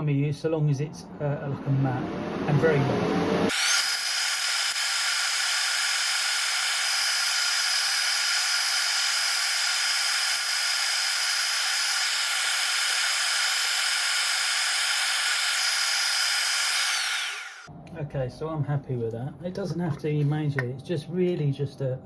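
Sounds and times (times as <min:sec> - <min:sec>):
spray paint hissing: 0:03.5 - 0:16.8.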